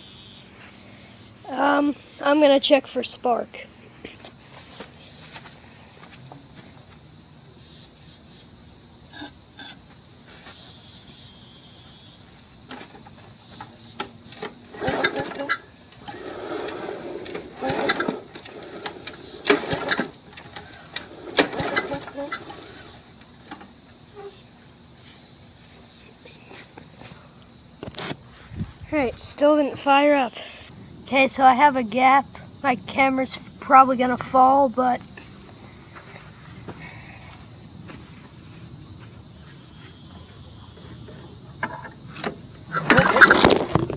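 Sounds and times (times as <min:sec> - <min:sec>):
crickets chirping: 0:00.0 - 0:43.9
mower engine turning over: 0:14.0 - 0:23.7, 0:41.7 - 0:43.9.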